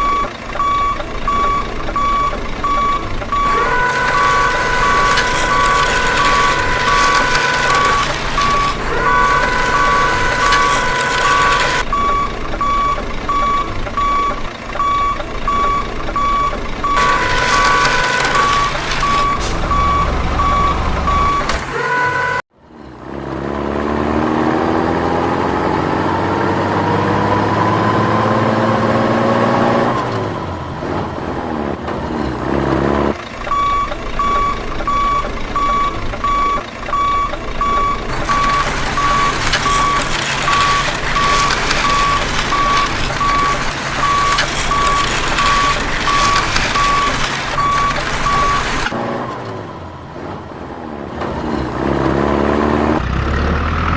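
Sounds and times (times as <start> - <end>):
truck reversing alarm beeping: 0.0 - 22.4, 33.2 - 49.0
engine running: 0.0 - 53.9
engine revving: 1.4 - 12.2, 16.4 - 33.4, 37.0 - 53.9.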